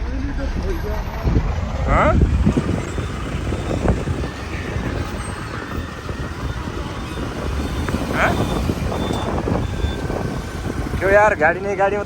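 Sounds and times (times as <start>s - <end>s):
traffic engines rumbling: 0.0s - 12.0s.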